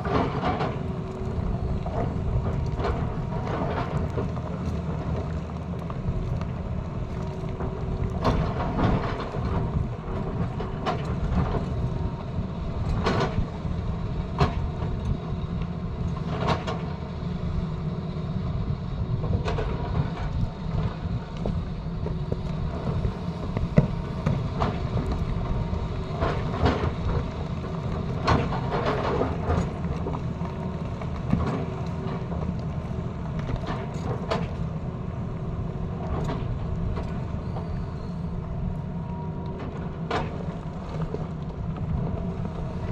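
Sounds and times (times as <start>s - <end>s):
excavator diesel rumble: 0.0s - 42.9s.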